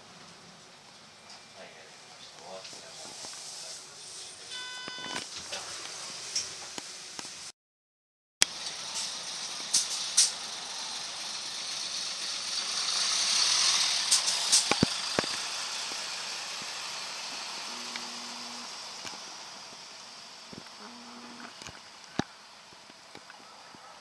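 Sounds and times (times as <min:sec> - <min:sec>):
low buzzer tone: 0:04.6 - 0:05.2, 0:17.6 - 0:18.7, 0:20.8 - 0:21.6
sharp rattling clicks: 0:08.4 - 0:16.8
air brake hiss: 0:08.5 - 0:17.7.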